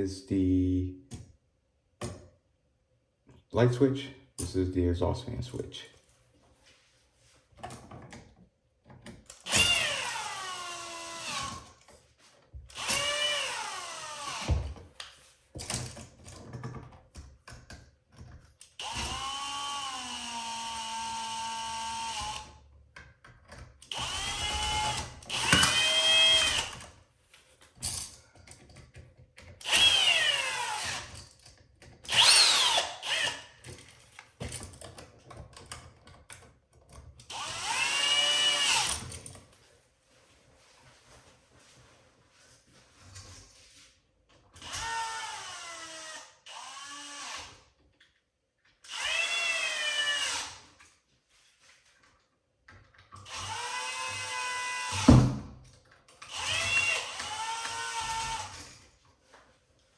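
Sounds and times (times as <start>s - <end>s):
power drill bursts: 9.4s - 11.6s, 12.8s - 14.6s, 18.8s - 22.5s, 23.9s - 26.8s, 29.6s - 31.1s, 32.1s - 33.4s, 37.3s - 39.0s, 44.6s - 47.6s, 48.9s - 50.6s, 53.2s - 55.1s, 56.3s - 58.6s.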